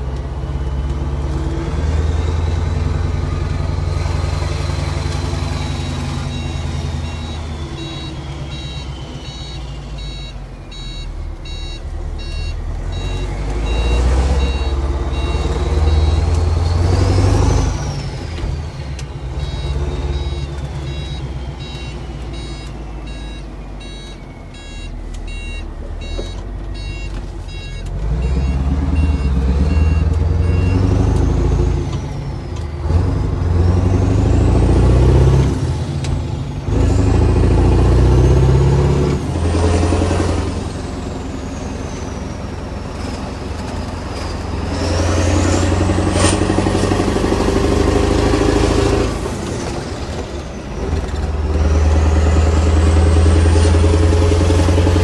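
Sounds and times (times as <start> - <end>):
truck engine revving: 0.0 - 55.0
short high beeps: 5.6 - 16.8, 19.4 - 31.0
turbo whistle: 5.8 - 16.8.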